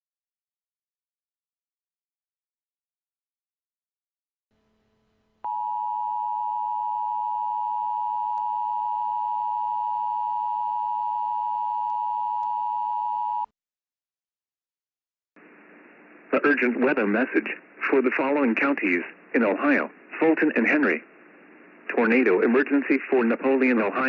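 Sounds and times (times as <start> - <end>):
two-tone attention signal: 5.5 - 13.5.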